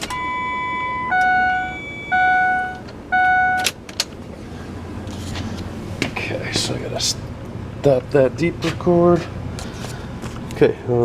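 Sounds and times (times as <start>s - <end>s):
car warning chimes: 0.0s - 3.8s.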